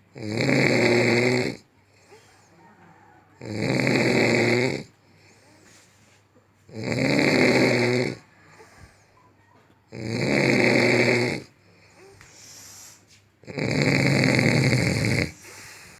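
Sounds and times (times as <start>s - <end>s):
loud snoring: 0.1s - 2.5s, 3.4s - 5.0s, 6.7s - 9.0s, 9.9s - 12.2s, 13.4s - 15.9s
faint breath: 1.8s - 3.3s, 5.0s - 6.4s, 8.2s - 9.6s, 11.6s - 13.3s, 15.3s - 15.9s.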